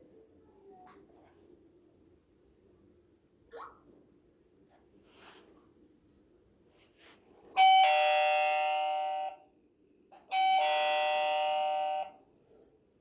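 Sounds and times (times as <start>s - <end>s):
two-note doorbell chime: 7.6s - 9.4s, 10.3s - 12.3s.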